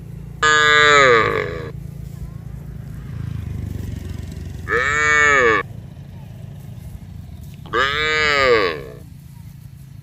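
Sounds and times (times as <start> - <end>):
steady low rumble: 0.0 - 10.0
cow mooing: 0.4 - 1.8, 4.6 - 5.7, 7.7 - 9.0.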